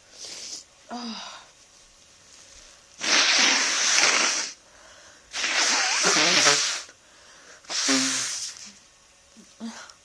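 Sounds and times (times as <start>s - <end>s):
person sneezing hard: 3.0s - 4.6s, 5.3s - 6.9s, 7.7s - 8.6s.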